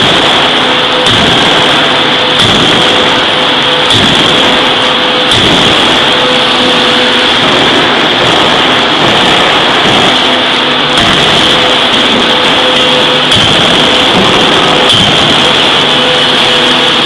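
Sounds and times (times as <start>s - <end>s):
machinery hissing and humming: 0.0s - 17.0s
sharp metallic knocks: 0.0s - 17.0s.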